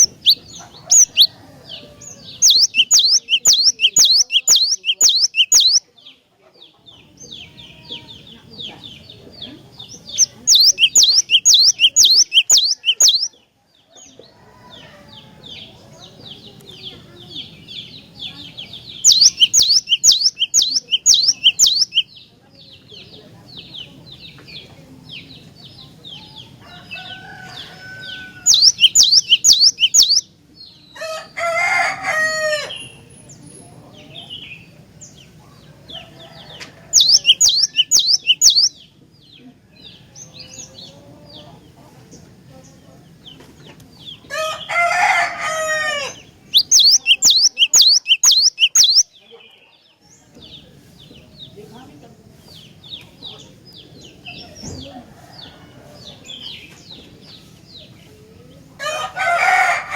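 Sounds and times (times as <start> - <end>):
bird chirping rapidly: 0.0 - 1.3, 2.0 - 5.8, 9.9 - 13.4, 18.6 - 22.1, 28.1 - 30.3, 36.9 - 38.8, 46.2 - 49.2
harsh lower bird call: 0.0 - 5.8, 10.1 - 13.3, 18.9 - 22.1, 27.6 - 30.2, 36.8 - 38.7, 46.1 - 49.1.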